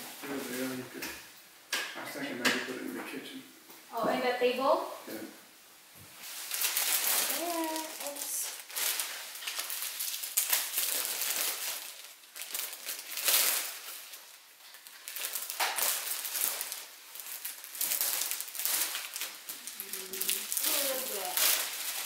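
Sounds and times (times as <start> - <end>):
packaging crinkling: 6.2 - 22.0.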